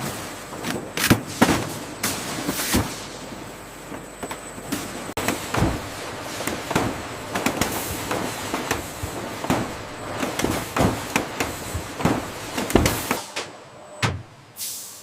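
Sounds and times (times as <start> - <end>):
factory machinery clattering: 0.0 - 14.6
heavy thud: 5.2 - 13.2.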